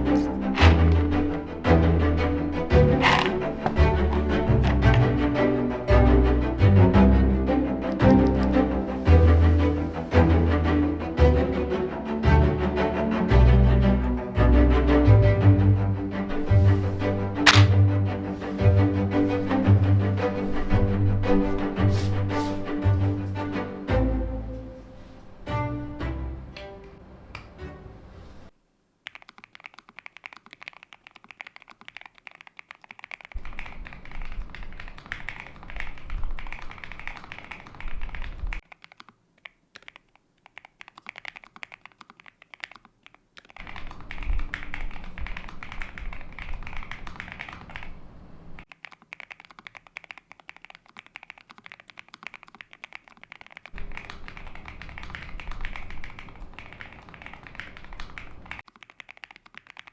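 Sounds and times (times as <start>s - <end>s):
mechanical keyboard typing: 43.5s - 48.0s, 48.7s - 59.9s.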